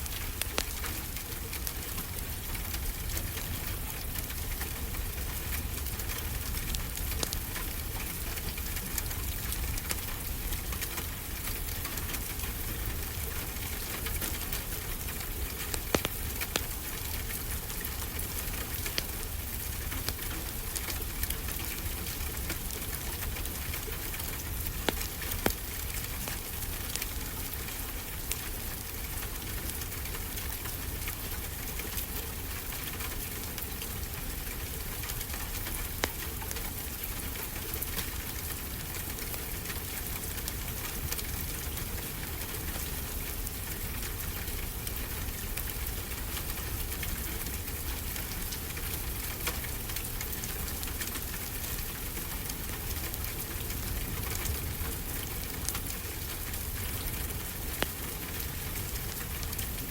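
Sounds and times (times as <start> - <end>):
fire popping: 0.0 - 27.5, 35.5 - 37.1, 48.4 - 59.9
steady rain: 0.0 - 59.9
wood fire crackling: 0.0 - 59.9.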